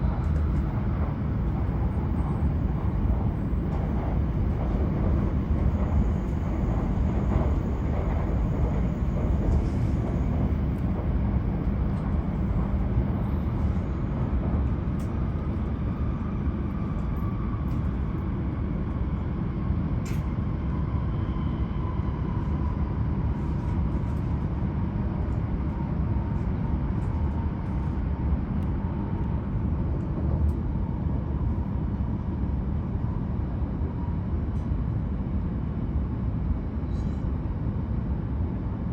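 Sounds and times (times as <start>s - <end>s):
faint train whine: 0.0s - 38.9s
train wheels rumbling on rail: 0.0s - 38.9s.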